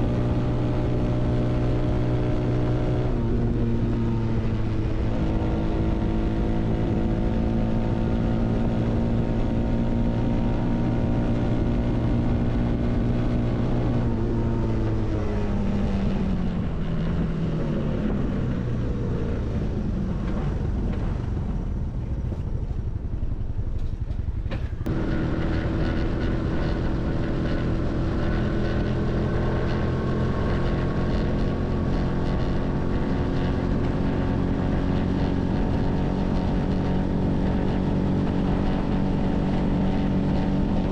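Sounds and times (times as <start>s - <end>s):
motorcycle engine running: 0.0s - 40.9s
wind noise: 0.0s - 40.9s.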